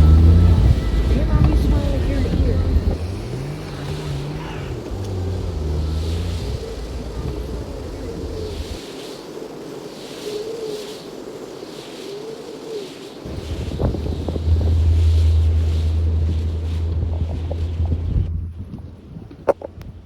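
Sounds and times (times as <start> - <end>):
heavy low rumble: 0.0 - 8.8, 13.2 - 20.0
wind blowing: 0.0 - 20.0.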